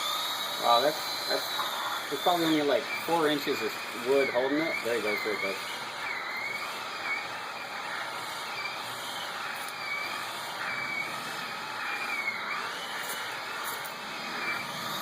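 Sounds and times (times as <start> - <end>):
electric chainsaw cutting wood: 0.0 - 15.0.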